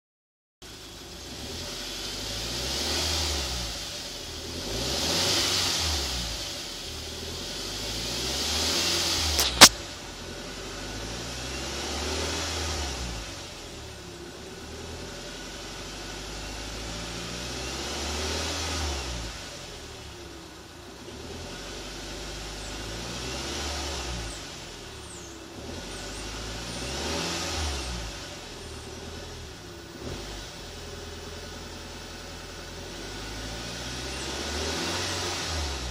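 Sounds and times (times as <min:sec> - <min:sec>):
car engine revving: 0:00.8 - 0:35.9
sharp click: 0:09.4 - 0:09.8.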